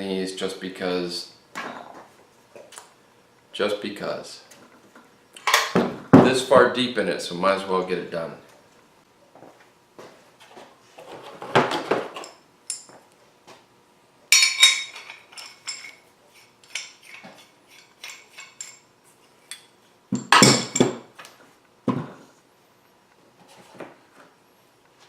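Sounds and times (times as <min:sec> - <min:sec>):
steel parts clinking and clattering: 0:14.3 - 0:16.0, 0:16.6 - 0:18.9.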